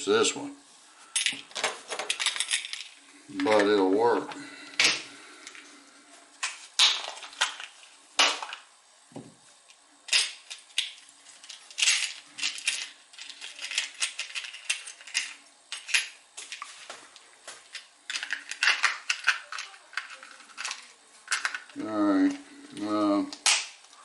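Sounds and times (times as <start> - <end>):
metal parts and tools clattering: 1.1 - 3.7, 10.1 - 16.9, 17.7 - 21.8.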